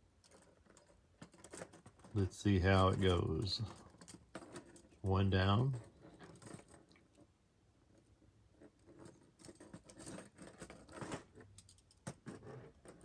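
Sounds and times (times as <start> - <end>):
handcuffs clicking and rattling: 2.8 - 7.0, 9.2 - 12.2.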